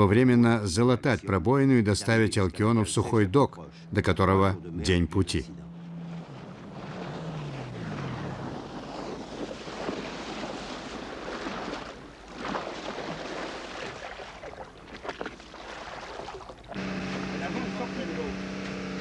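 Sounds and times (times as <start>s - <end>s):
sea noise: 3.1s - 19.0s
low tone gliding downward: 3.8s - 9.1s.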